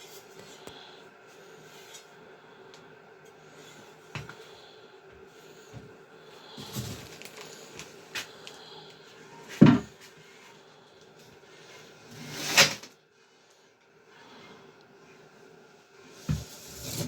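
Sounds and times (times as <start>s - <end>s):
objects knocking and clunking: 9.5s - 10.0s.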